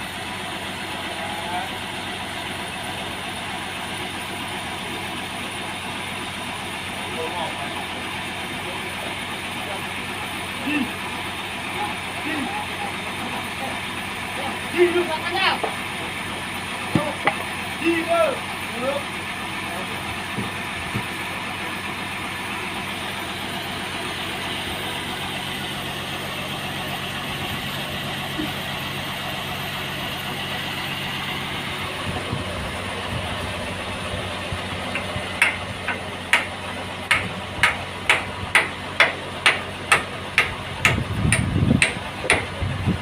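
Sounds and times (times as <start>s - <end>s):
sawmill engine running: 0.0s - 43.0s
sharp metallic knocks: 34.9s - 42.6s.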